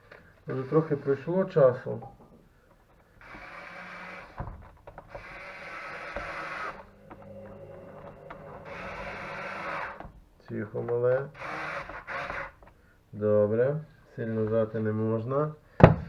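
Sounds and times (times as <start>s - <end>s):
electric screwdriver whirring: 3.2s - 10.3s, 11.3s - 12.8s.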